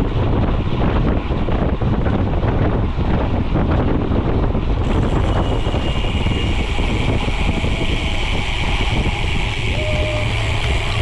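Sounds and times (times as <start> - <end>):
wind buffeting microphone: 0.0 - 11.0
faint thin whine: 4.8 - 11.0.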